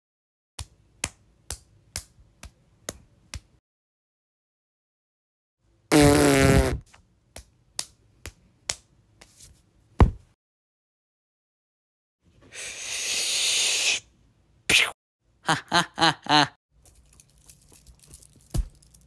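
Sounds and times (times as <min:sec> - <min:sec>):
cartoon fart sound effect: 0:05.9 - 0:06.8
rising hiss: 0:12.5 - 0:14.1.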